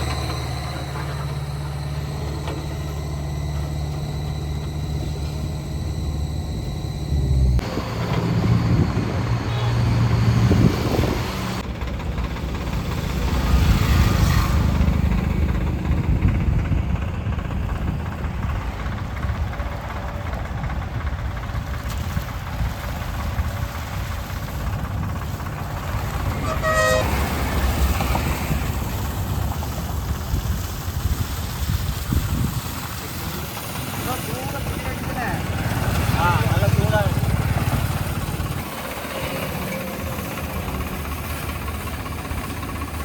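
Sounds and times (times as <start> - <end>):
diesel machinery rumbling: 0.0 - 43.0
short horn toot: 9.4 - 10.1, 26.3 - 27.4.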